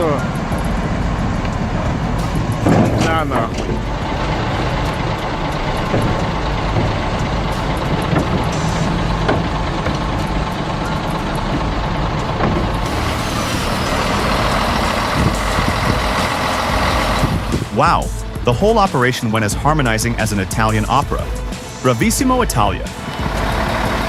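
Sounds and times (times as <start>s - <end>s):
metal clanks: 0.0s - 18.4s
heavy diesel machinery running: 0.0s - 24.0s.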